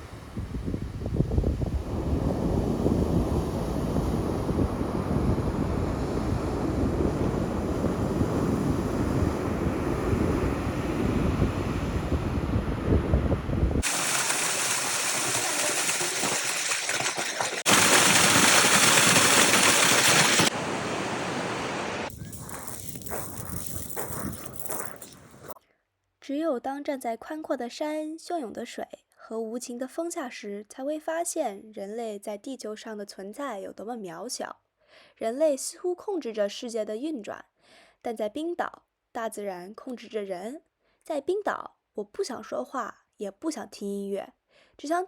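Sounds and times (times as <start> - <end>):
rushing water hiss: 13.8 - 25.6.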